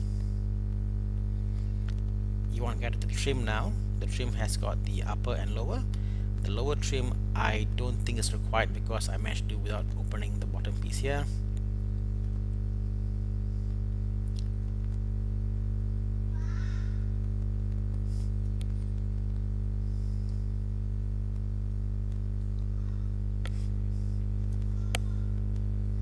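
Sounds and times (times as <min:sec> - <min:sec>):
low electrical hum: 0:00.0 - 0:26.0.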